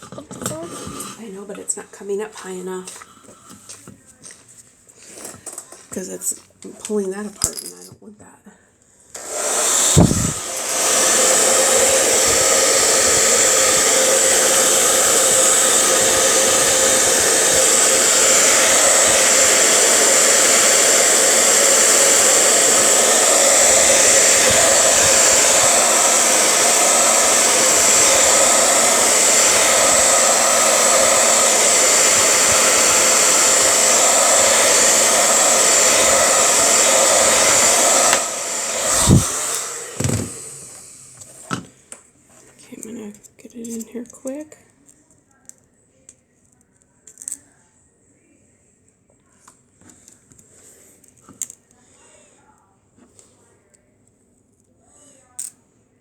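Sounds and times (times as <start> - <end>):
blow dryer running: 9.1 - 41.7.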